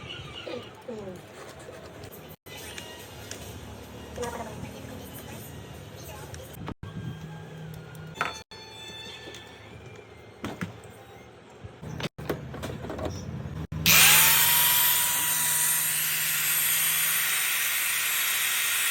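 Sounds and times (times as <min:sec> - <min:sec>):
angle grinder whining: 0:13.8 - 0:18.9.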